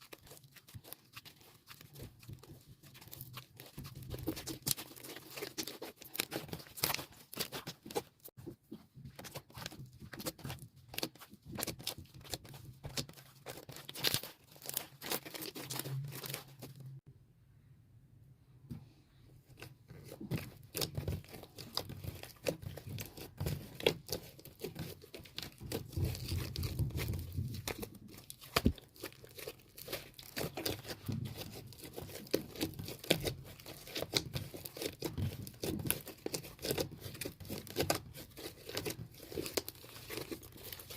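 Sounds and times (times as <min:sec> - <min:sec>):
slime squished by hand: 0:00.0 - 0:08.3, 0:19.6 - 0:40.9.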